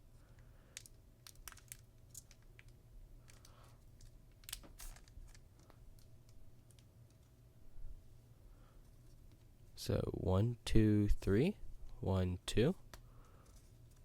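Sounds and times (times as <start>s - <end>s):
trading cards clicking and rustling: 0.8s - 7.3s.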